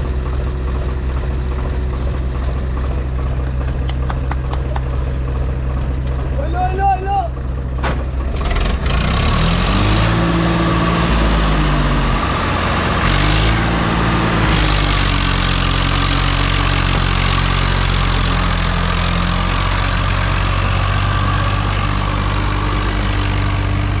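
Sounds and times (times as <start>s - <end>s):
diesel engine revving: 7.4s - 24.0s.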